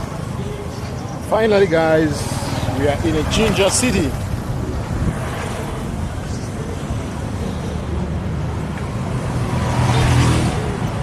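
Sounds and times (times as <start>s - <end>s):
street traffic rumble: 0.0s - 11.0s.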